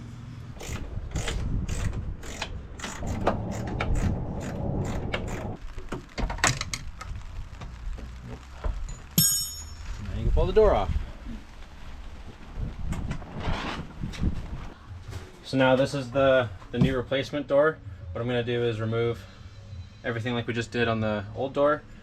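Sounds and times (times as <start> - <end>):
socket ratchet clicking: 0.6 - 5.4
sharp metallic clink: 9.2 - 10.0.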